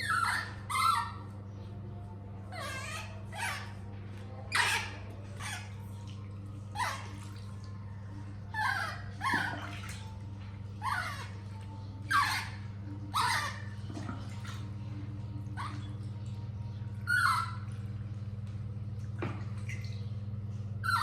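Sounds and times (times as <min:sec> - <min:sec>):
baby monkey squeaking: 0:00.0 - 0:01.3, 0:02.5 - 0:03.8, 0:04.5 - 0:05.9, 0:06.7 - 0:07.2, 0:08.5 - 0:10.0, 0:10.8 - 0:11.4, 0:12.1 - 0:14.3, 0:15.6 - 0:16.0, 0:17.0 - 0:17.7, 0:20.8 - 0:21.0
steady low hum: 0:00.0 - 0:21.0.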